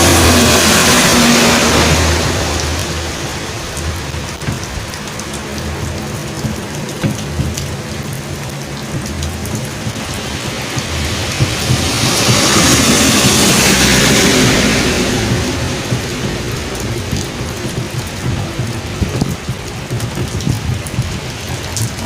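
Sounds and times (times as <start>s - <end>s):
steady rain falling: 0.0s - 22.0s
vehicle passing: 0.0s - 22.0s
water drips: 0.0s - 22.0s.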